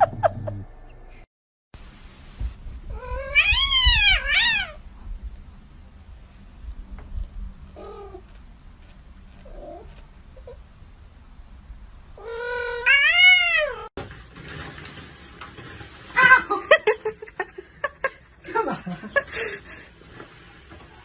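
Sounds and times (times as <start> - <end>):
cat meowing: 2.9 - 4.8, 12.2 - 13.9.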